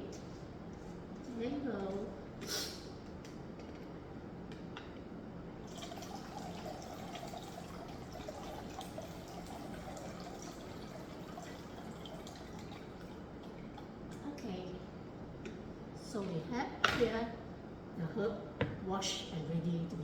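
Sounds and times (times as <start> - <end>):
water pouring and dripping: 5.7 - 13.9.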